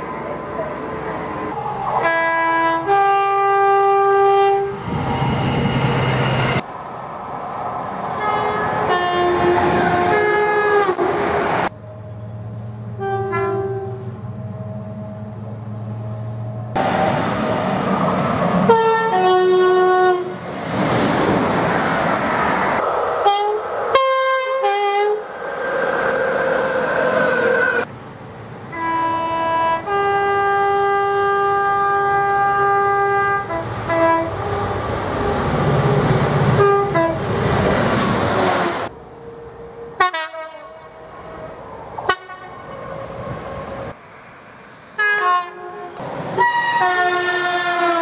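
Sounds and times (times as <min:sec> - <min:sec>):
passing train rumble and clatter: 0:00.0 - 0:48.0
train horn blasts: 0:02.0 - 0:04.8, 0:08.2 - 0:11.0, 0:12.9 - 0:14.2, 0:18.7 - 0:20.4, 0:23.2 - 0:25.2, 0:28.7 - 0:34.8, 0:36.6 - 0:37.3, 0:40.0 - 0:41.0, 0:42.1 - 0:42.7, 0:45.0 - 0:48.0.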